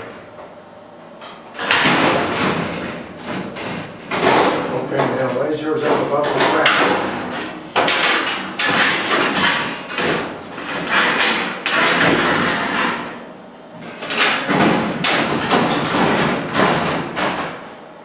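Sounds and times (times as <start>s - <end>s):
hammering and knocking: 1.7s - 13.0s, 14.0s - 17.6s.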